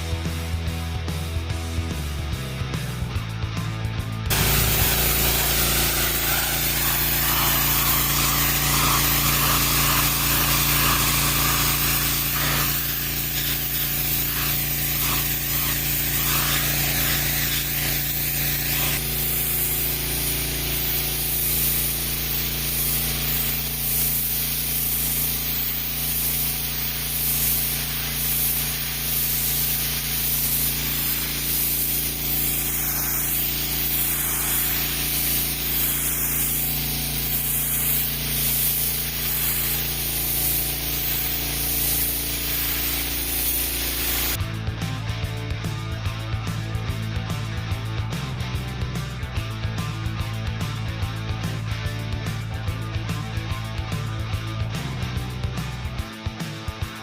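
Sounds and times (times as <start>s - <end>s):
pressure washer engine running: 4.3s - 44.4s
water jet hissing against wood: 4.3s - 44.4s.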